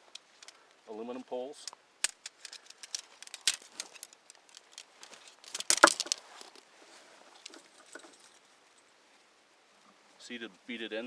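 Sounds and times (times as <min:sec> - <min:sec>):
tent pole sections clicking: 0:00.0 - 0:00.7, 0:01.6 - 0:08.4.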